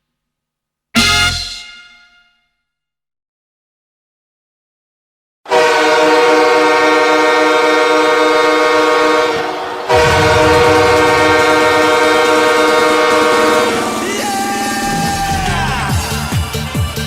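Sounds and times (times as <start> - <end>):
goal horn blasting: 1.0 - 2.4, 5.5 - 14.8.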